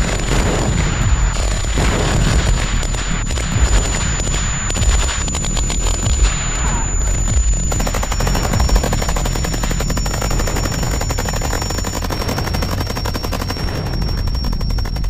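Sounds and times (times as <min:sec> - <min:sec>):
deep bass rumble: 0:00.0 - 0:10.4
distorted electronic noise: 0:00.0 - 0:15.0
rapid stutter of clicks: 0:00.0 - 0:15.0.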